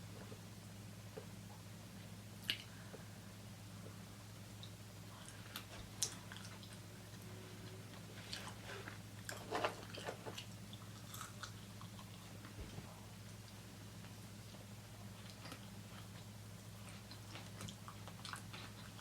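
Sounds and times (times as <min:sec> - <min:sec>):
steady low hum: 0:00.0 - 0:19.0
chewing with wet mouth clicks: 0:02.4 - 0:02.7, 0:04.6 - 0:06.8, 0:09.2 - 0:12.4, 0:15.2 - 0:19.0.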